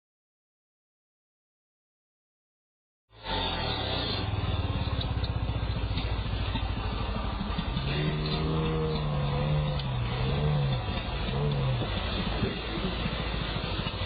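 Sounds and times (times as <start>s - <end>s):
chainsaw engine running: 3.2s - 14.0s.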